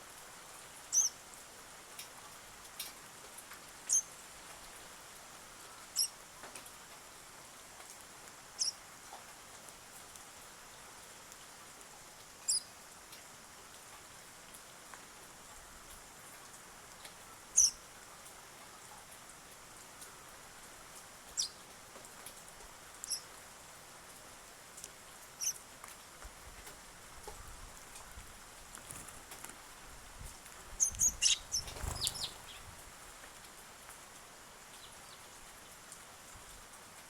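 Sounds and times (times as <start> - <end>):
faint steady hiss: 0.0 - 37.0
sparrow chirping: 0.9 - 1.1, 3.9 - 4.1, 17.6 - 17.8, 21.4 - 21.6, 30.8 - 32.7.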